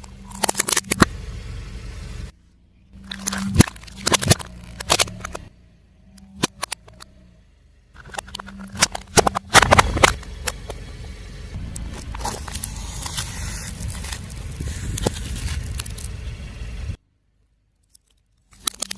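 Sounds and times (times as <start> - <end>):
tyre crushing crunchy objects: 0.0 - 1.3, 3.0 - 5.5, 7.9 - 11.1, 11.7 - 16.3
low engine hum: 0.0 - 17.3.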